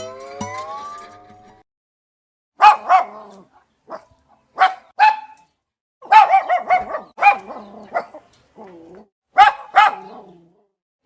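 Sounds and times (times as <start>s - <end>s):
small dog barking: 2.6s - 5.4s, 6.0s - 8.3s, 9.3s - 10.5s.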